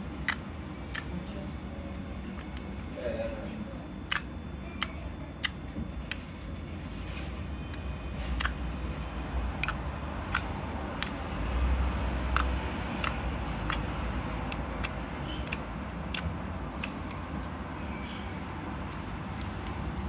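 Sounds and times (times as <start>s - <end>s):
slime toy clicks and pops: 4.1s - 6.2s, 8.4s - 8.6s, 9.6s - 11.2s, 12.3s - 13.9s, 14.5s - 17.1s.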